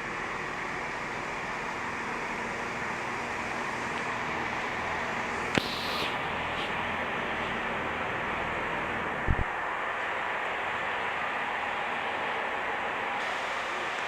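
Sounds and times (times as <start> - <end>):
train running steadily: 0.0 - 14.0
air hiss burst: 5.6 - 6.2.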